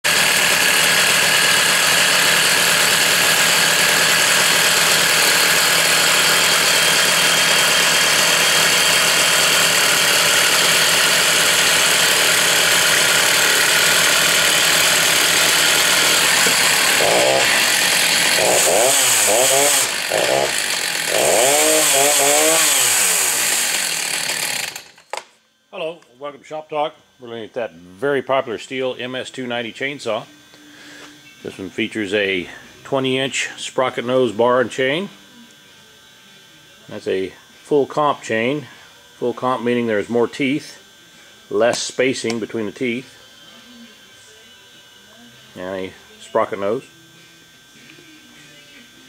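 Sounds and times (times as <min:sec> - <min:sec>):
chainsaw running and revving: 0:00.0 - 0:25.1.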